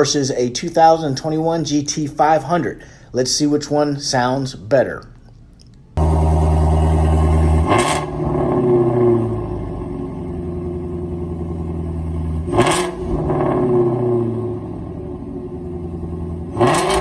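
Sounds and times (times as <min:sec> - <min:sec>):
car engine starting and idling: 0:05.8 - 0:17.0
car engine revving: 0:06.0 - 0:17.0.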